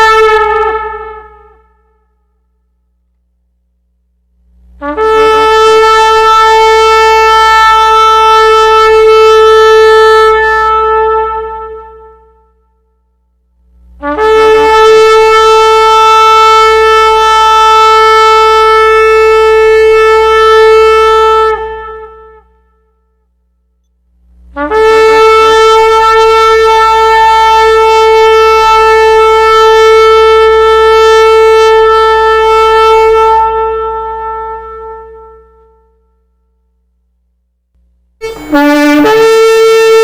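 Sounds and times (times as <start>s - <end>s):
shofar blasts: 0.0s - 2.2s, 4.8s - 13.0s, 14.0s - 23.2s, 24.5s - 36.4s, 38.2s - 40.0s.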